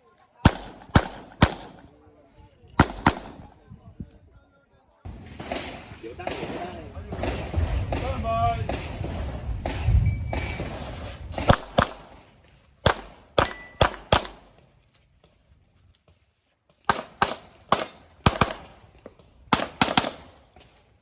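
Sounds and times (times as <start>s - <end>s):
handgun shots: 0.5s - 1.8s, 2.8s - 3.4s, 12.9s - 14.4s.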